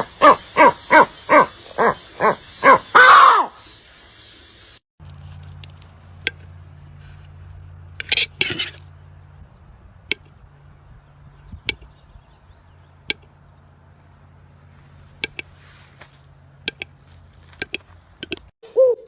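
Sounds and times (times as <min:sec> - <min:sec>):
low steady hum: 0:05.0 - 0:18.5.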